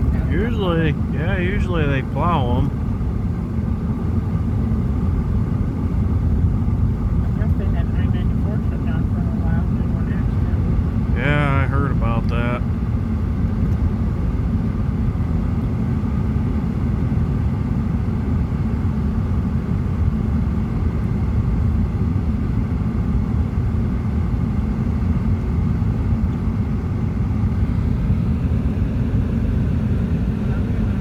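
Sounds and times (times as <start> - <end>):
car interior road rumble: 0.0 - 3.0.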